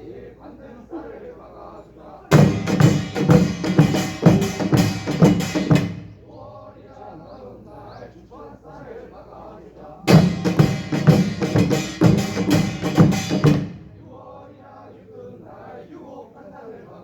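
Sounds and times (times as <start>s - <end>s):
low murmuring voices: 0.0s - 17.0s
gongs and drums rapid beats: 2.3s - 6.3s, 10.1s - 14.1s.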